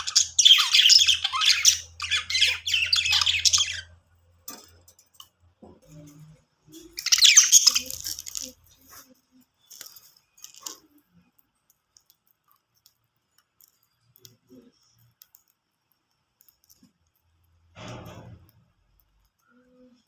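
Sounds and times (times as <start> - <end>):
high bird chirp: 0.0 - 4.0, 6.7 - 8.6
budgies clicking: 0.0 - 4.7, 6.8 - 8.7
rustling: 7.6 - 17.2.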